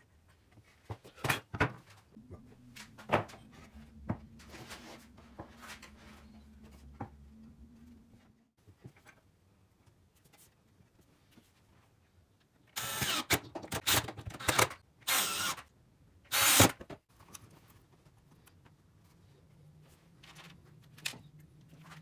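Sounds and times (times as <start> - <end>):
electric drill bursts: 12.8 - 15.6, 16.3 - 16.8.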